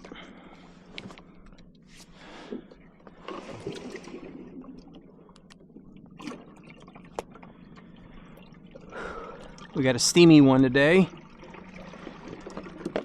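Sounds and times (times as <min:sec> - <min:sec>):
water splashing and trickling: 0:03.2 - 0:13.0.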